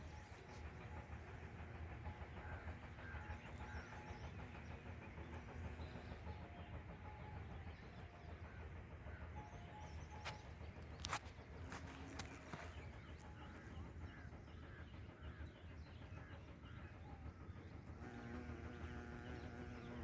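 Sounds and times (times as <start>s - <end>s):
bumblebee buzzing: 11.7s - 12.6s, 17.9s - 20.0s.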